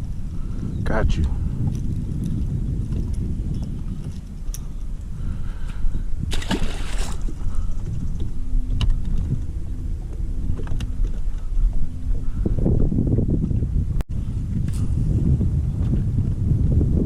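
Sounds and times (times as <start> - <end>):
wind rumbling on microphone: 0.0 - 17.0
faint steady hum: 4.2 - 14.0.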